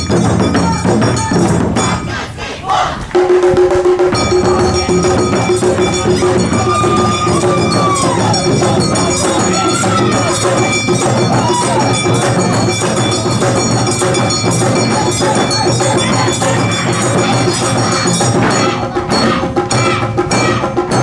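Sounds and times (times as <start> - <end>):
drums: 0.0 - 21.0
high gliding melody: 4.1 - 18.9
metal hand gongs clanging: 4.1 - 21.0.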